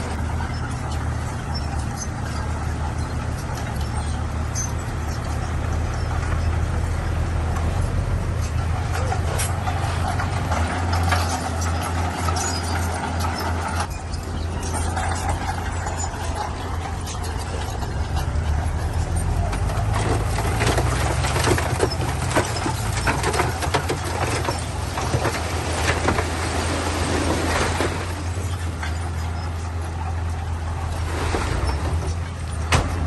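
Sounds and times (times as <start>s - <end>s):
bulldozer diesel engine running: 0.0s - 33.0s
metal clanks and rattles: 0.0s - 33.0s.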